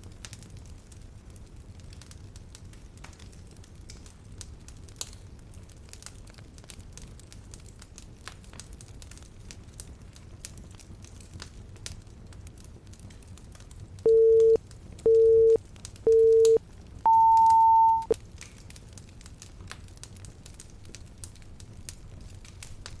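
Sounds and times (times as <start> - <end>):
fireplace crackling: 0.0 - 23.0
electronic timer beeps: 14.1 - 18.2.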